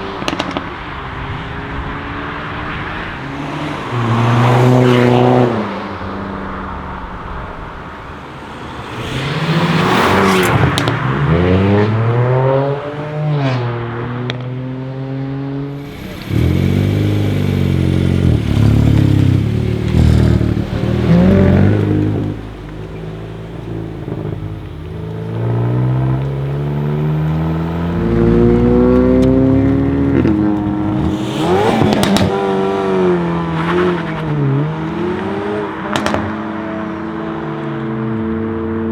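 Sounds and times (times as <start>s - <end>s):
car engine revving: 0.0s - 38.9s
exhaust crackles and pops: 0.2s - 0.8s, 15.8s - 34.4s, 35.9s - 36.4s.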